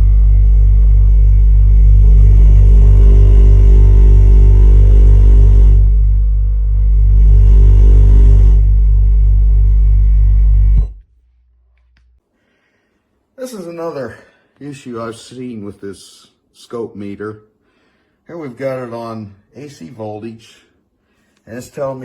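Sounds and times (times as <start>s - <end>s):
bass-heavy music: 0.0s - 12.2s.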